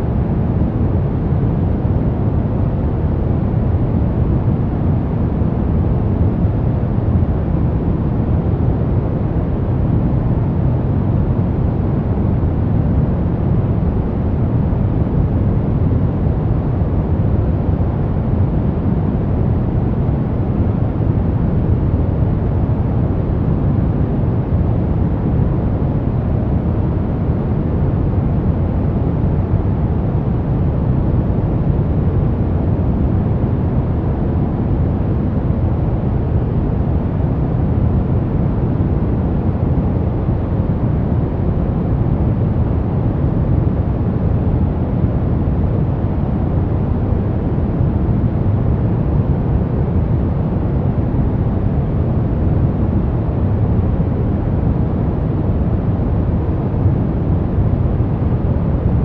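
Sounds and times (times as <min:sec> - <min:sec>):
deep steady noise rush: 0:00.0 - 0:59.0.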